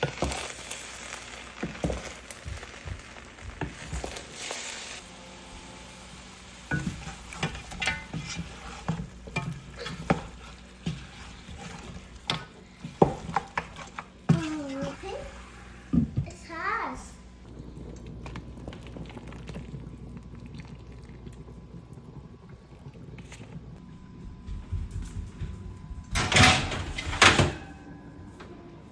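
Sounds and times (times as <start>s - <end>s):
food sizzling in a pot: 0.0s - 17.5s.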